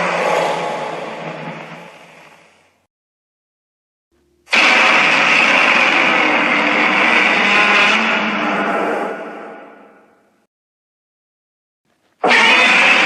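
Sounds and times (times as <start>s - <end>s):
harsh monster sound: 0.0s - 2.8s, 4.5s - 10.2s, 12.2s - 13.0s.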